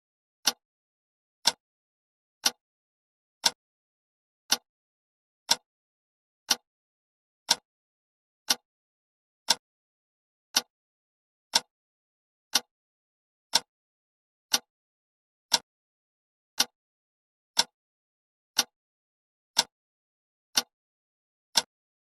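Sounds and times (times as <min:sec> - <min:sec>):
clock ticking: 0:04.5 - 0:04.7, 0:10.5 - 0:10.7, 0:12.5 - 0:12.7, 0:16.6 - 0:16.8.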